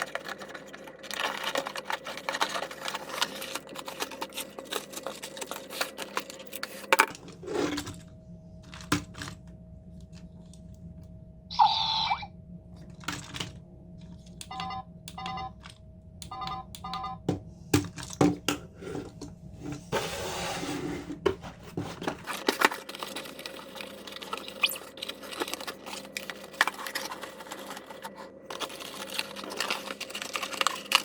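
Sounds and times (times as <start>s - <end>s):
rapid clicking and rustling: 0.0s - 8.1s, 21.8s - 31.0s
faint electronic hum: 0.0s - 31.0s
long electronic tone: 10.3s - 12.8s, 14.4s - 17.3s
short electronic beeps: 11.5s - 12.3s.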